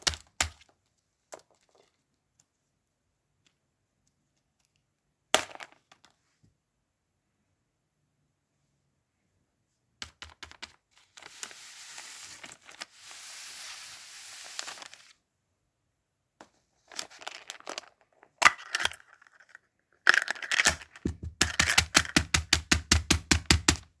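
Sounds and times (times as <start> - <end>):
fast taps with deep thumps: 21.0 - 21.6.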